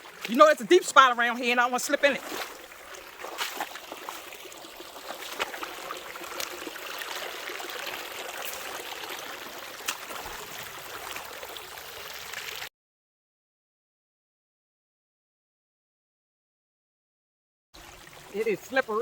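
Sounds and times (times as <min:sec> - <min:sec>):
creek water running over rocks: 0:00.0 - 0:12.7, 0:17.8 - 0:19.0.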